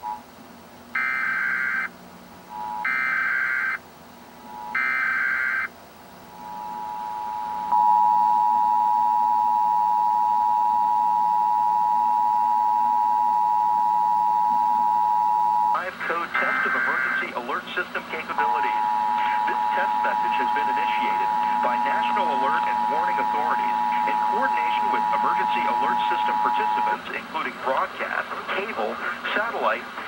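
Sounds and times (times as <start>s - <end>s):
two-tone attention signal: 18.5s - 27.0s.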